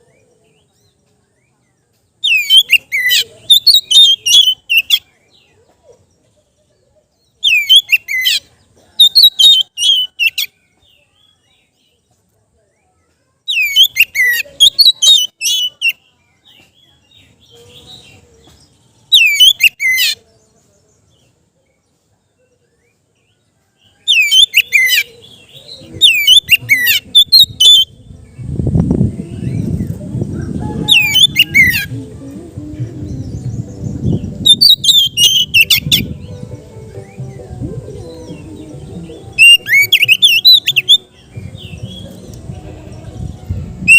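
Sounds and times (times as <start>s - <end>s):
bird singing whistled phrases: 19.1s - 20.1s, 34.4s - 36.2s, 39.3s - 41.1s
loud low rumbling noise: 28.0s - 39.4s.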